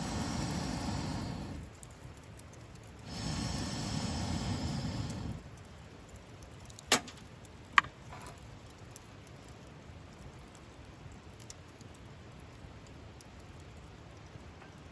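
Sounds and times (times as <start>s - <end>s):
burning wood cracking: 0.0s - 14.9s
campfire rushing hiss: 0.0s - 14.9s
faint fire crackles: 0.0s - 14.9s.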